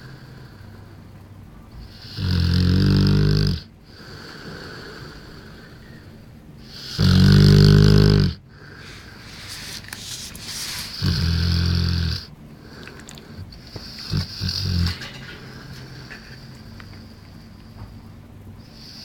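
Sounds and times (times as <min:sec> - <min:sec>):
dog snoring: 0:01.7 - 0:06.0, 0:06.6 - 0:18.0, 0:18.6 - 0:19.0
dog breathing softly: 0:08.5 - 0:19.0.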